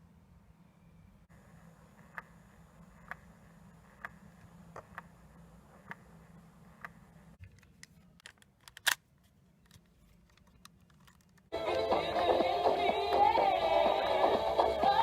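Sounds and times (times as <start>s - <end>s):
faint low motor hum: 0.0s - 8.2s.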